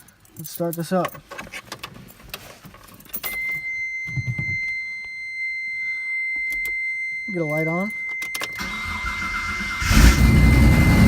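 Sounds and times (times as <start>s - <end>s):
car keys jangling: 0.0s - 3.7s.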